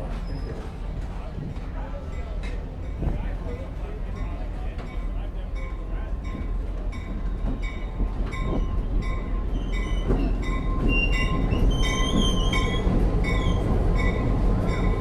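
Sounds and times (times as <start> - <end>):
train wheels squealing: 0.0 - 0.8, 7.6 - 15.0
diesel train rumbling: 0.0 - 15.0.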